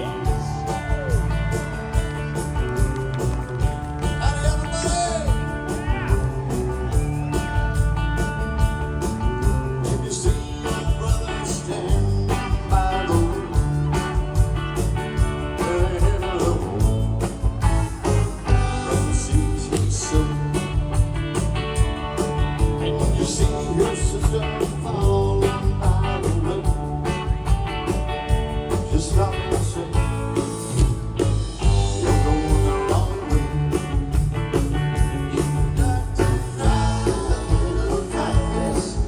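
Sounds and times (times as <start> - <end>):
country band music: 0.0 - 39.0
guitar: 0.0 - 39.0
person singing: 4.0 - 5.6, 9.6 - 14.0, 15.6 - 17.1, 18.5 - 20.7, 22.6 - 27.3, 31.6 - 34.0, 35.0 - 39.0.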